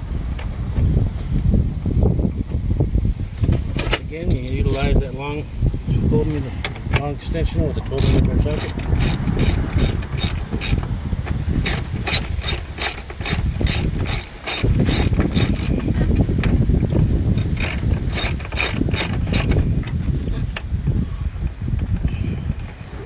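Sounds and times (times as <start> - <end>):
socket ratchet clicking: 4.3 - 4.9, 7.9 - 10.9, 11.6 - 15.9, 17.3 - 20.0.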